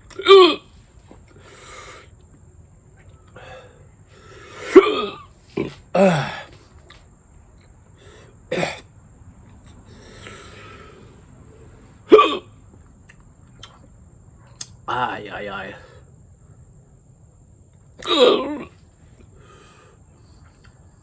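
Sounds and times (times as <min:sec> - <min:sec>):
man hiccuping: 0:00.1 - 0:00.7, 0:04.6 - 0:06.5, 0:08.5 - 0:08.8, 0:12.1 - 0:12.5, 0:18.0 - 0:18.8
heavy breathing: 0:01.3 - 0:02.2, 0:03.3 - 0:06.8, 0:07.9 - 0:08.8, 0:09.7 - 0:12.1, 0:19.1 - 0:20.7.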